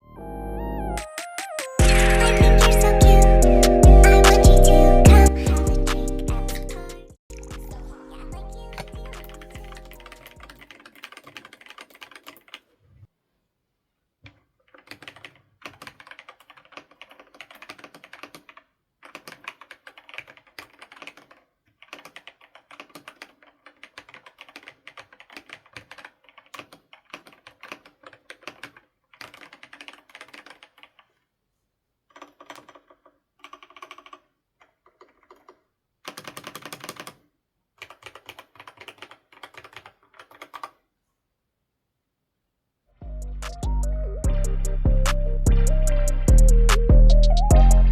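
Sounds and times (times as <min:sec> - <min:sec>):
fast mechanical keyboard typing: 0:08.6 - 0:12.8, 0:14.3 - 0:31.3, 0:32.1 - 0:40.8.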